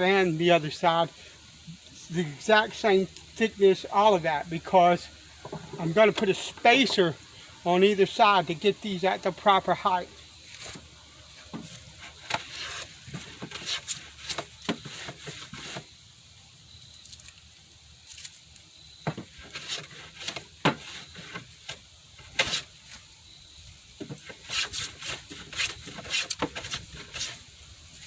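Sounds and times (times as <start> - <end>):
wood scraping against wood: 10.4 - 15.9, 19.0 - 23.1, 24.0 - 28.0
wood knocking: 19.0 - 21.4.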